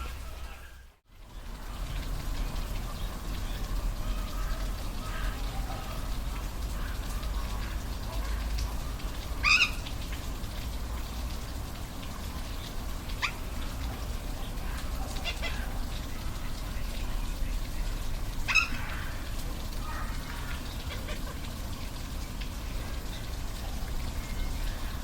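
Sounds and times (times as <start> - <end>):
falling water rushing: 0.0 - 25.0
high animal calls: 18.5 - 19.2.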